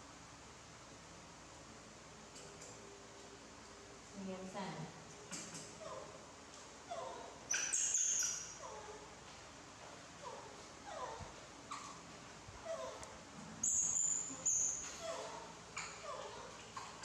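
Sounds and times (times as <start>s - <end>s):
baby monkey whimpering: 6.9s - 9.0s, 10.2s - 12.0s, 12.6s - 17.0s
high monkey squeaks: 7.0s - 8.9s, 13.6s - 17.0s.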